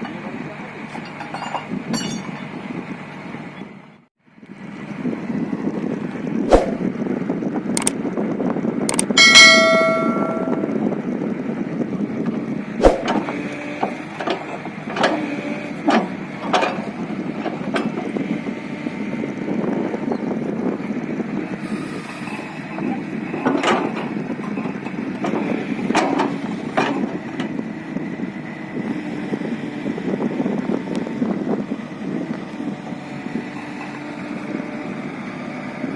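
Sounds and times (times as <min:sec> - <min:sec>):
excavator diesel engine running: 0:00.0 - 0:35.9
loud ringing clang: 0:01.3 - 0:02.5, 0:09.2 - 0:11.0.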